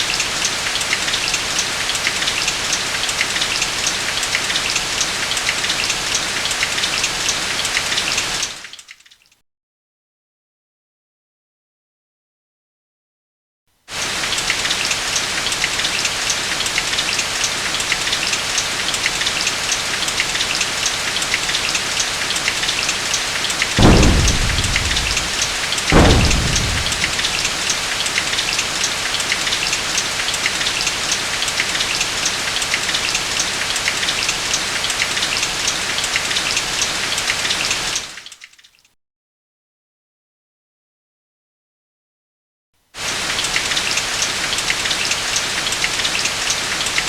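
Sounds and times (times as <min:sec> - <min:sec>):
thunderclaps: 0:23.8 - 0:27.9
heavy rain falling: 0:23.8 - 0:28.1.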